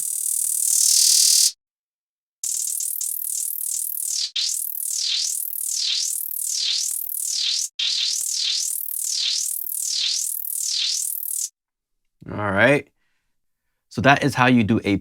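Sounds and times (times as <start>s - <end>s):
arpeggiated synthesizer with pitch bends: 2.4s - 11.5s.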